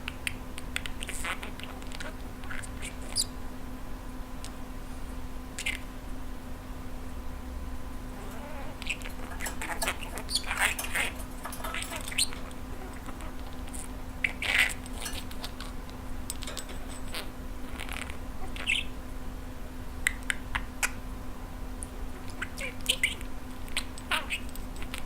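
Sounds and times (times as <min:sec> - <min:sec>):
budgerigar chattering: 0:08.2 - 0:13.4, 0:16.4 - 0:19.0.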